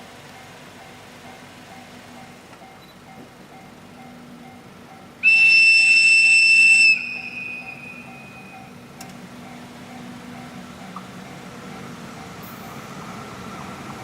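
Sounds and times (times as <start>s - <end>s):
locomotive whistle: 5.2s - 8.8s.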